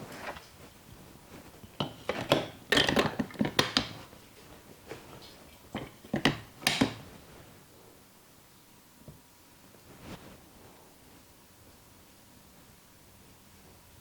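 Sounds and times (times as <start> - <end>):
hands slapping and tapping head: 5.8 - 7.1.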